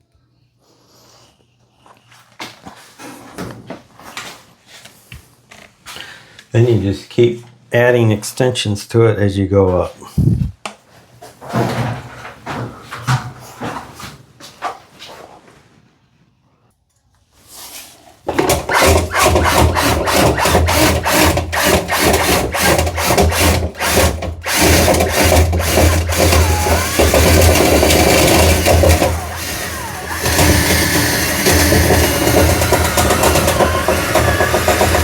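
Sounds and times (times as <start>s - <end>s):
drill spinning brush in duct: 18.4s - 35.0s.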